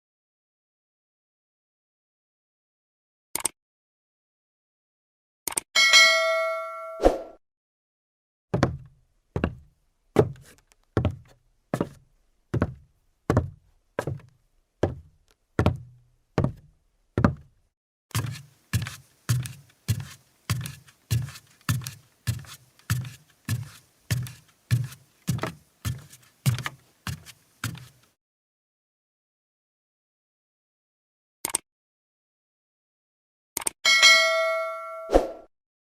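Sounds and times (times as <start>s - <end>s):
footsteps on wooden floor: 8.5s - 12.0s, 12.6s - 17.5s, 18.2s - 28.0s.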